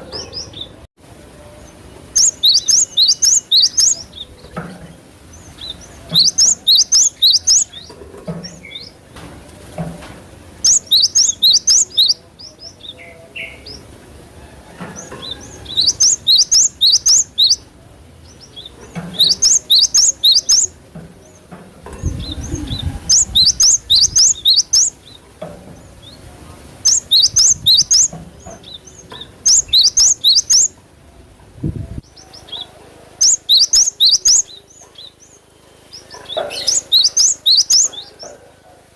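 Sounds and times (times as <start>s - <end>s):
bird singing high notes: 2.1s - 4.0s, 6.2s - 7.8s, 10.7s - 12.2s, 15.8s - 17.6s.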